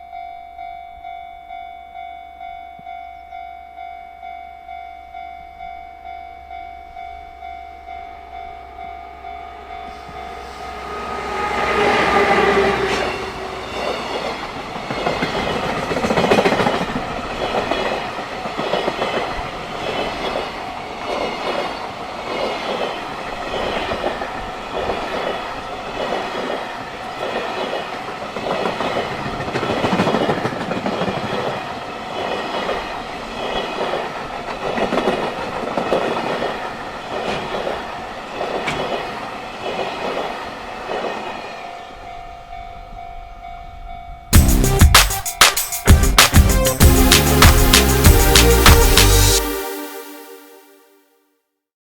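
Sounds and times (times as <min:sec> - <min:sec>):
locomotive rushing past: 0:09.5 - 0:41.4
train wheels clattering over rail joints: 0:13.8 - 0:20.5, 0:38.4 - 0:41.2.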